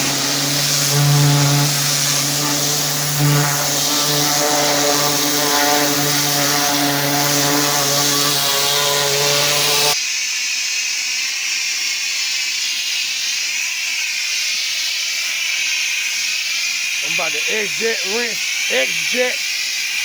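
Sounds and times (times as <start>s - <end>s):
pressure washer engine drone: 0.0s - 10.0s, 17.0s - 19.3s
water jet hissing on concrete: 0.0s - 20.0s.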